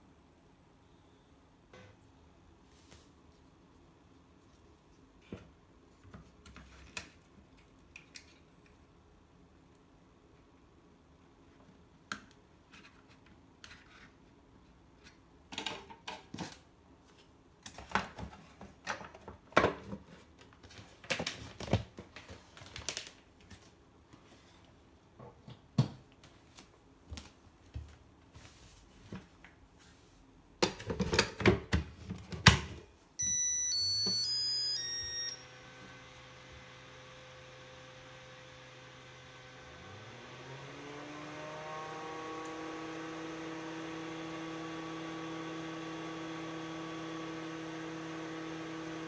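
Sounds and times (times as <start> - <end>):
charger electronic beeping jingle: 33.2 - 35.5
cooling fan hum: 33.2 - 49.0.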